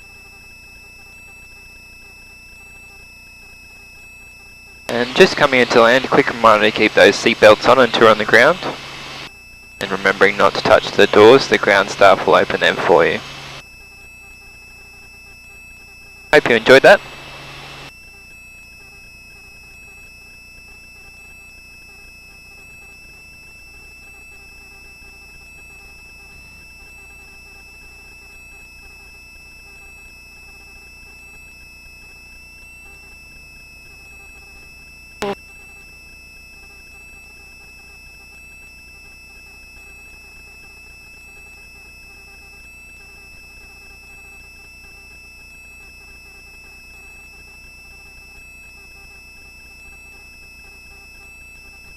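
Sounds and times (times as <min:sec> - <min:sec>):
thin high whine: 0:00.0 - 0:51.9
electrical hiss and hum: 0:04.7 - 0:17.9, 0:32.8 - 0:51.9.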